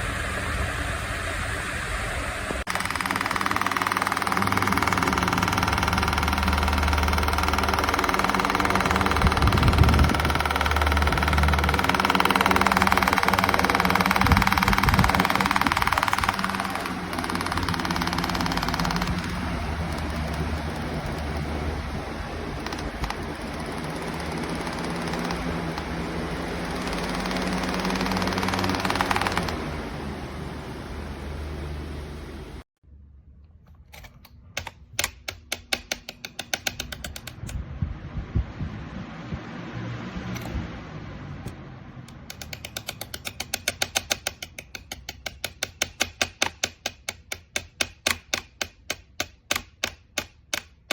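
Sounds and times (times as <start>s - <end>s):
box fan air rush: 0.0s - 32.7s, 36.2s - 44.1s
low motor hum: 0.0s - 32.7s, 37.3s - 42.4s
rapid sharp clicks: 2.7s - 30.0s, 34.6s - 37.6s, 42.2s - 50.9s.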